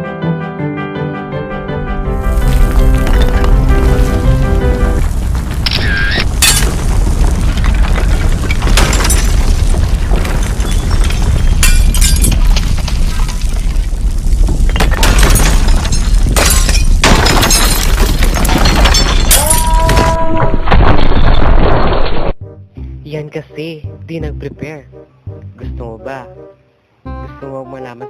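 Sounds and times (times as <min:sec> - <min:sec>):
deep rumble: 0:01.8 - 0:23.1
crashes of things breaking: 0:02.2 - 0:22.4.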